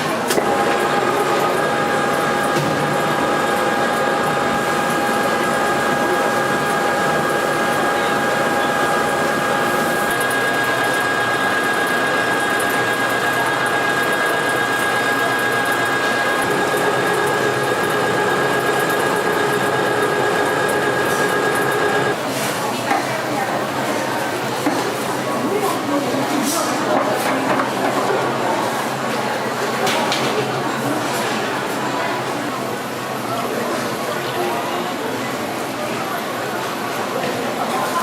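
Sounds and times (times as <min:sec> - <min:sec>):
machine humming with high whine: 0:00.4 - 0:22.2.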